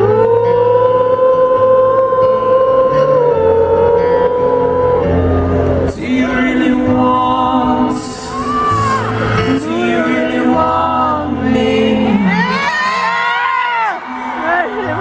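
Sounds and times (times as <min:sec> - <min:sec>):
live acoustic rock band with singing: 0:00.0 - 0:15.0
crowd whooping and cheering: 0:08.2 - 0:09.4, 0:12.0 - 0:15.0.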